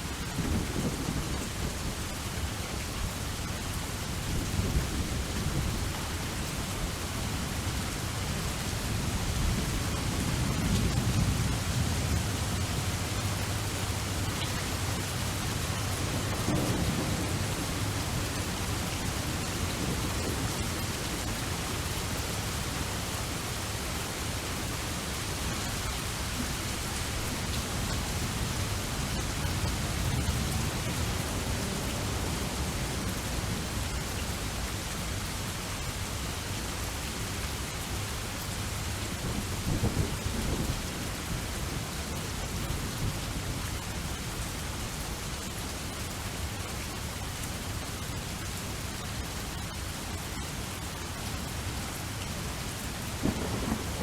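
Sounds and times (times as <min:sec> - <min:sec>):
steady rain hissing: 0:00.0 - 0:54.0
low thunder rumbling: 0:03.8 - 0:23.6, 0:39.2 - 0:43.6, 0:53.1 - 0:54.0.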